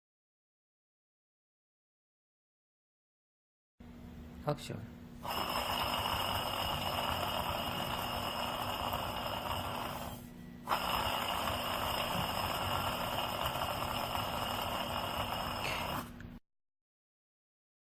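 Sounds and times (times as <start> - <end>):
compressor grinding and whirring: 5.1 - 16.3.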